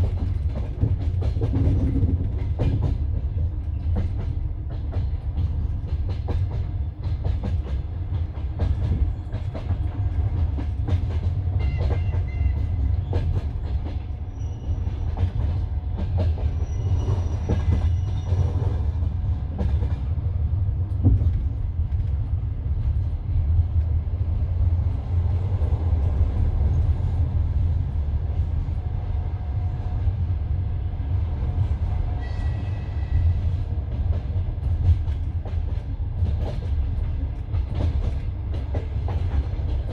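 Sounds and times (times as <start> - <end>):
train wheels clattering: 0.0 - 20.1, 32.2 - 39.9
low rumble of train carriage: 0.0 - 39.9.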